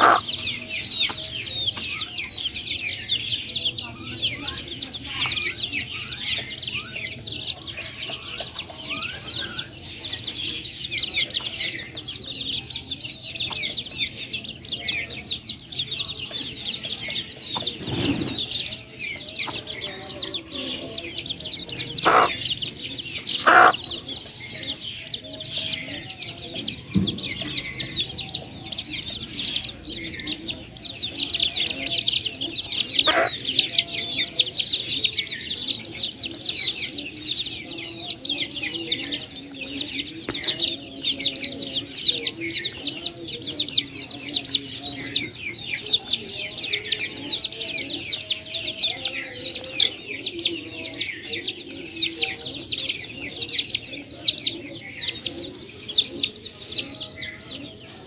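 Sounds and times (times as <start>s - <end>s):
hen clucking: 0.0s - 4.1s, 16.3s - 25.8s, 26.5s - 58.0s
chicks peeping: 0.0s - 58.0s.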